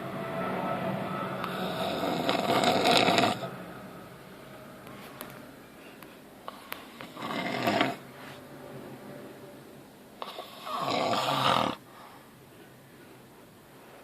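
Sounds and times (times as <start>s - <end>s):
man snoring: 1.4s - 3.5s, 6.9s - 8.0s, 10.2s - 11.8s.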